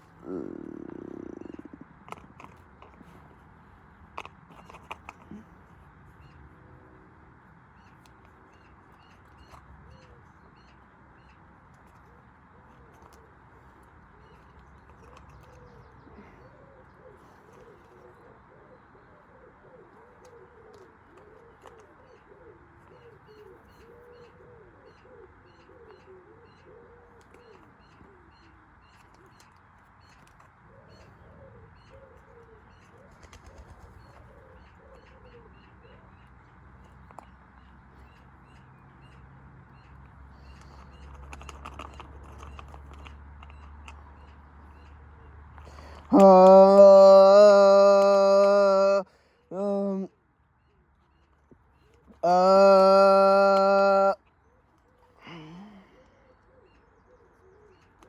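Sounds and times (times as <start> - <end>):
pigeons cooing: 0.0 - 3.4, 12.2 - 29.4, 30.6 - 36.1
small birds chirping: 0.0 - 6.6, 19.8 - 58.0.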